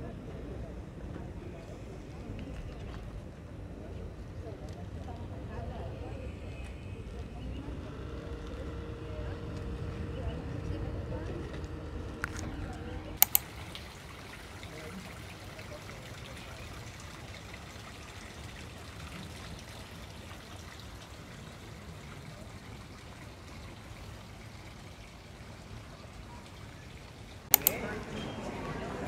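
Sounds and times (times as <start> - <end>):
running water trickling: 4.4 - 28.2
sharp clicks: 11.5 - 13.5, 27.5 - 27.8.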